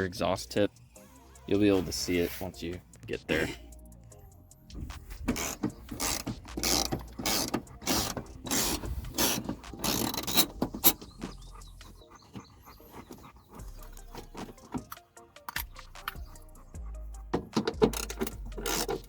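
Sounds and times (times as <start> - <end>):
socket ratchet clicking: 4.9 - 11.4, 13.9 - 16.6, 17.3 - 19.0.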